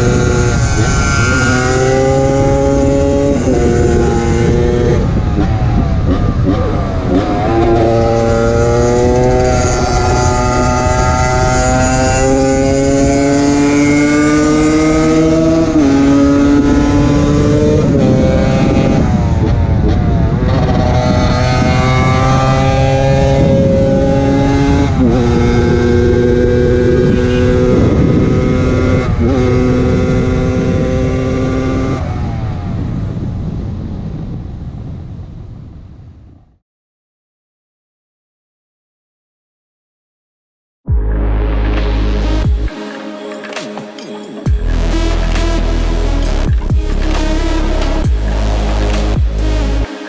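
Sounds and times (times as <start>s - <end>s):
motorcycle engine accelerating: 0.0s - 33.6s, 44.4s - 50.0s.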